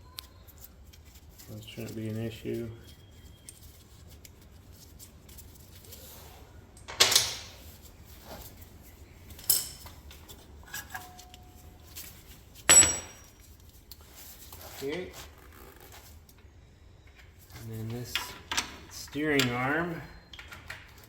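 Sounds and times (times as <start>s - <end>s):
metal tools clanking: 9.3s - 11.7s, 12.7s - 13.5s.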